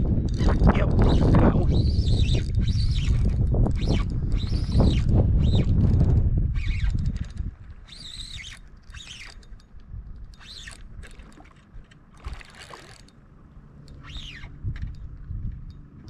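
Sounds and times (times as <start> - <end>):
wind buffeting microphone: 0.0 - 12.4, 13.5 - 16.0
high rising and falling bird calls: 14.0 - 14.6.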